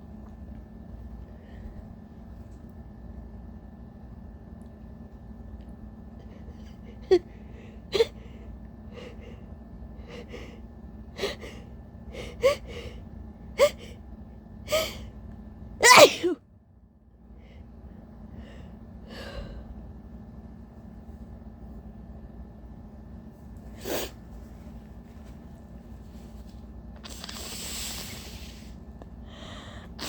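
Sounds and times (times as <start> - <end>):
woman sneezing: 15.8 - 16.4
soft breaths: 26.0 - 30.0
woman gasping inhalations: 27.1 - 30.0.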